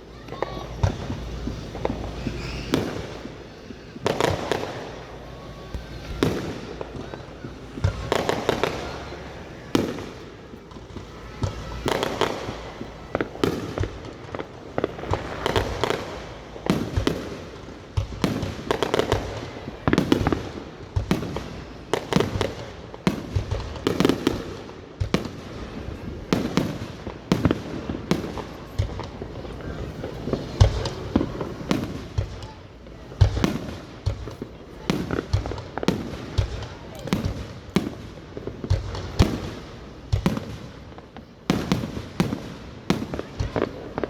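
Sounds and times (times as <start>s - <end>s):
fireworks booming and crackling: 0.0s - 44.0s.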